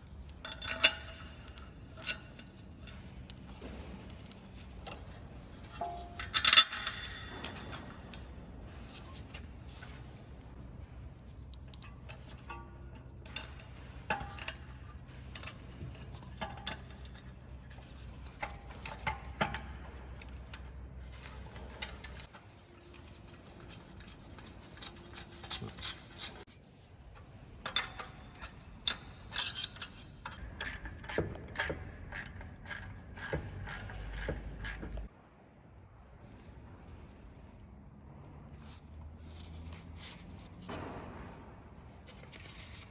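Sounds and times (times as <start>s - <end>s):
metallic clicks and clatter: 0.0s - 26.5s, 27.1s - 35.1s
ratchet wrench clicking: 27.6s - 35.1s.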